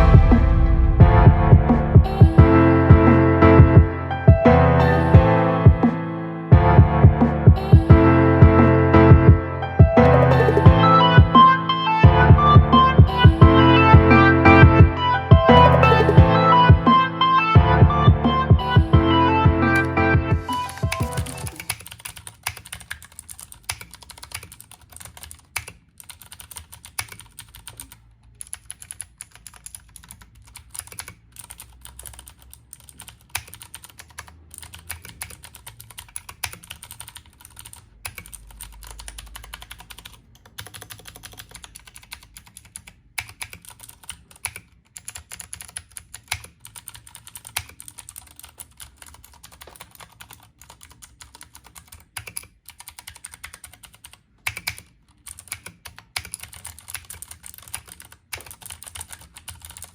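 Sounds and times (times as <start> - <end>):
mechanical keyboard clicks: 20.6 - 59.9.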